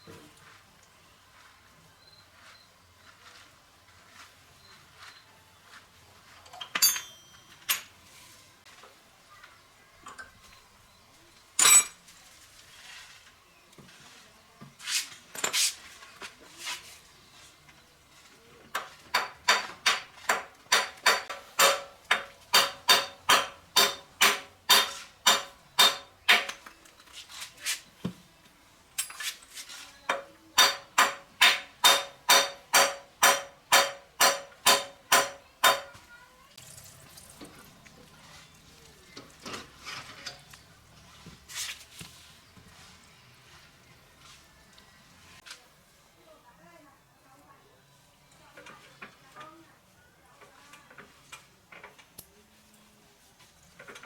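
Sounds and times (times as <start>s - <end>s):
metal striking metal: 20.7s - 26.6s, 30.6s - 36.0s.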